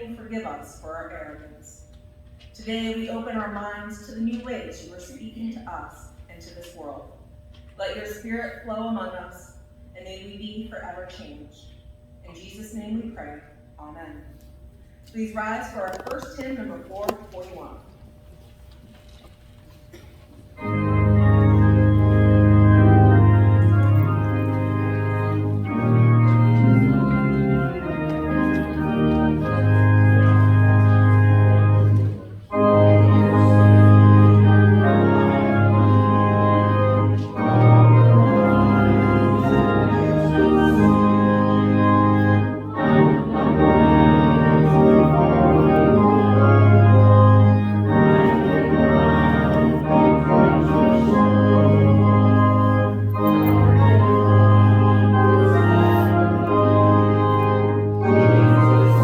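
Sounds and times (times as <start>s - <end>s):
organ playing hymn chords: 15.3s - 59.0s.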